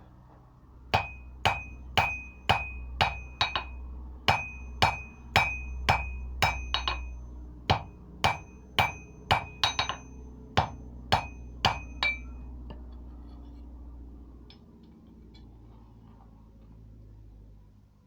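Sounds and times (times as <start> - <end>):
hammer striking steel: 0.9 - 12.5.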